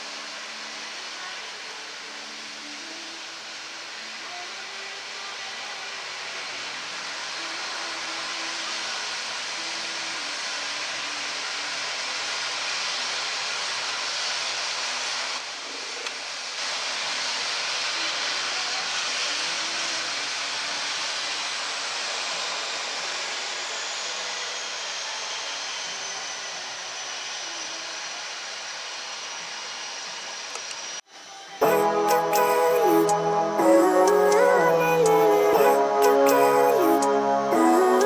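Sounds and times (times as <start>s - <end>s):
faint high whine: 17.1s - 38.0s.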